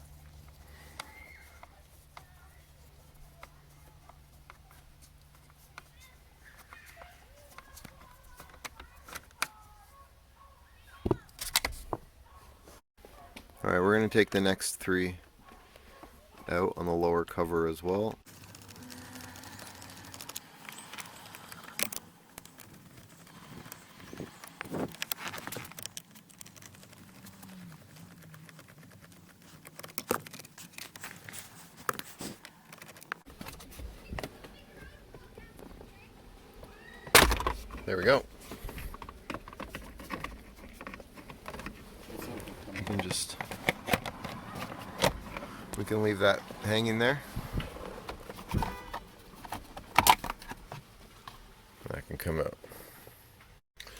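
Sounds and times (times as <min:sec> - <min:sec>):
plastic trim rustling: 0:18.4 - 0:51.2.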